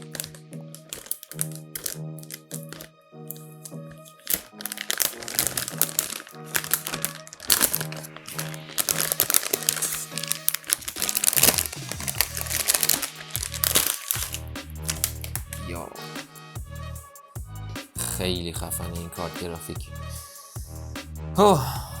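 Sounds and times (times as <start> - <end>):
packaging crinkling: 0.0 - 15.7
music with steady beat: 11.5 - 22.0.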